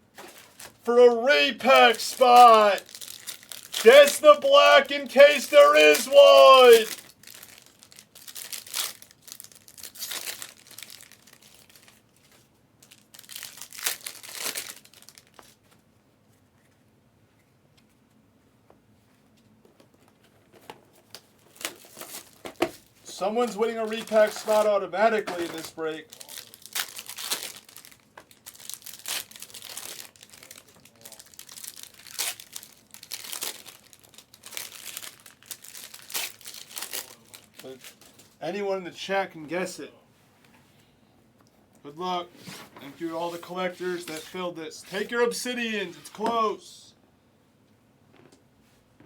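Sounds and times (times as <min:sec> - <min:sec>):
plastic wrapping crinkling and tearing: 0:00.1 - 0:15.8, 0:21.0 - 0:22.8, 0:23.4 - 0:38.4.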